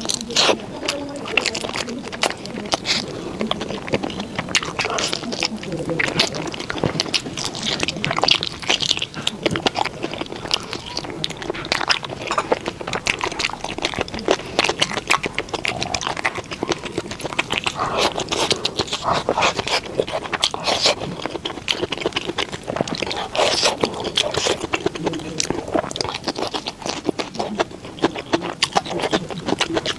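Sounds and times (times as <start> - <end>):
chewing and crunching: 0.0 - 29.9
wet mouth clicks and smacks: 1.5 - 29.9.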